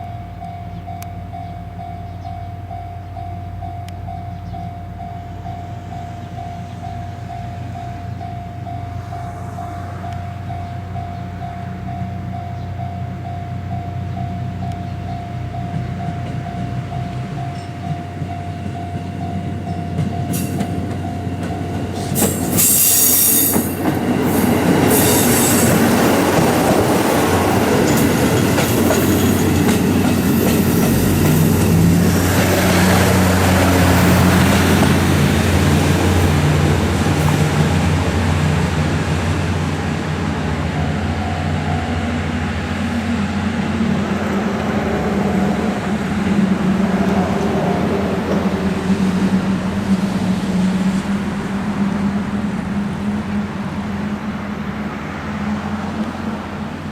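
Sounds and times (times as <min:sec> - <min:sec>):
diesel engine drone: 0:00.0 - 0:22.3, 0:25.7 - 0:56.9
train rumble on rails: 0:00.0 - 0:56.9
train wheel squeals: 0:15.0 - 0:36.3.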